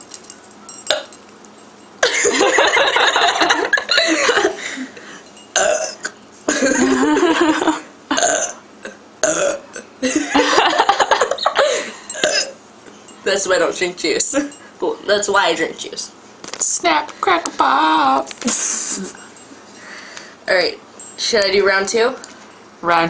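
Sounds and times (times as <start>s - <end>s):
person burping loudly: 5.6s - 7.0s, 8.1s - 10.0s, 12.1s - 12.6s.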